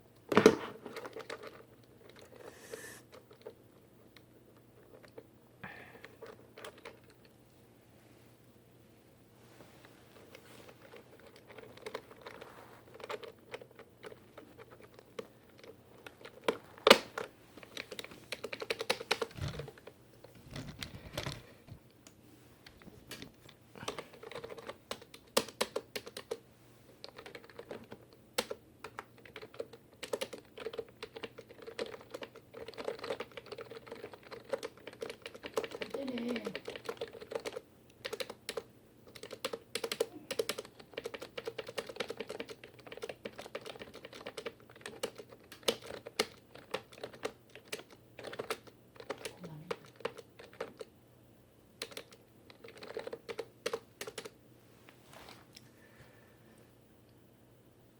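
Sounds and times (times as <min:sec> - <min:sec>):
keyboard keys clicking: 0:10.8 - 0:19.9, 0:23.9 - 0:26.4, 0:27.0 - 0:50.9, 0:51.8 - 0:54.4.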